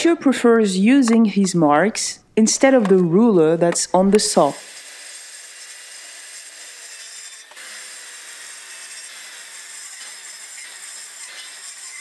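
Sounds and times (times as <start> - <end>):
saw cutting wood: 2.6 - 12.0.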